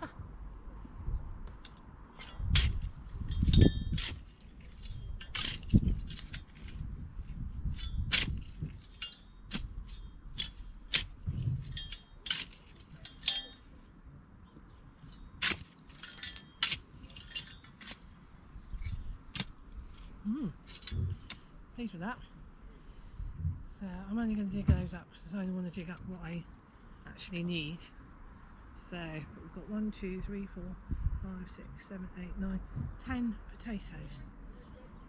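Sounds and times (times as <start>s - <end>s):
fork tines scraping stones: 1.6s - 13.8s, 15.0s - 21.5s.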